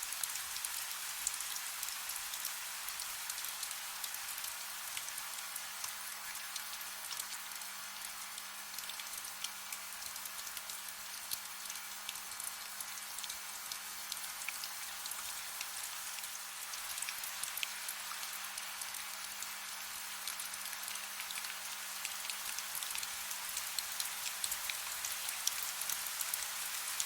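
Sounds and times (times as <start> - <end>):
soft rain pattering: 0.0 - 27.0.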